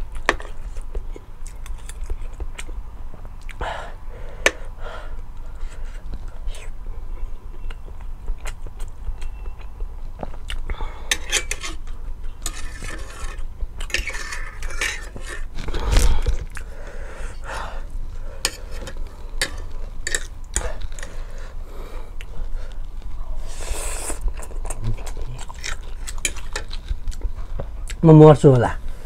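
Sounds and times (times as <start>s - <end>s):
utensils scraping a bowl: 11.1s - 15.7s, 18.4s - 20.3s.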